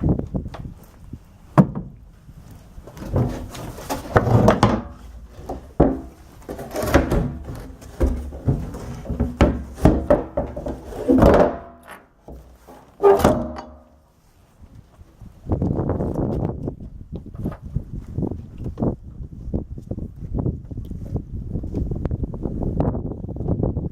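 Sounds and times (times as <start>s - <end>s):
knocks on boat deck: 6.8s - 11.7s.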